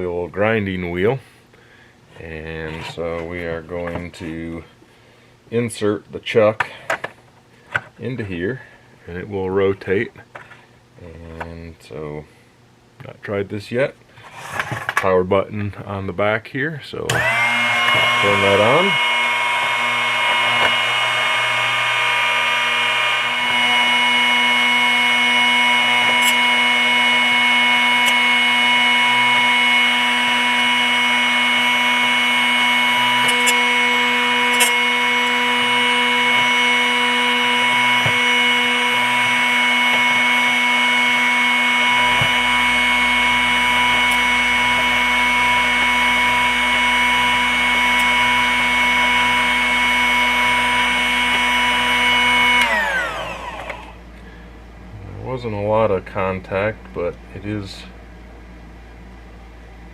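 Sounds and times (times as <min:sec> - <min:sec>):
grinding wheel motor humming: 0:17.1 - 0:54.2
low hum: 0:17.1 - 0:59.9.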